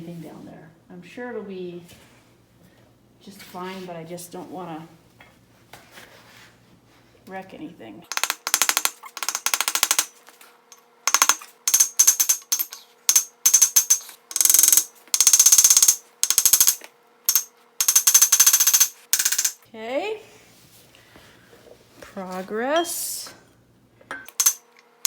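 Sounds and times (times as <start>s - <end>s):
ratchet wrench clicking: 8.1s - 10.1s, 11.1s - 19.6s, 24.3s - 24.6s.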